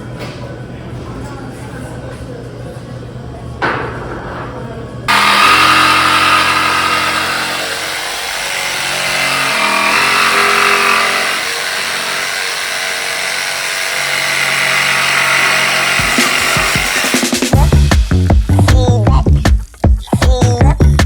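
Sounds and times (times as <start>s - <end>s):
power tool running under load: 5.1s - 17.9s.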